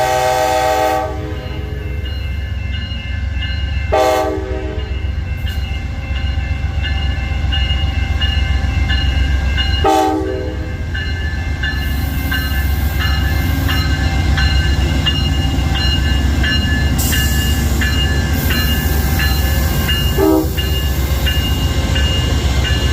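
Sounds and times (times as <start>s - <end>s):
train air horn: 0.0s - 1.6s, 3.9s - 4.9s, 9.8s - 10.7s, 20.2s - 20.6s
diesel locomotive rumbling past: 0.0s - 22.9s.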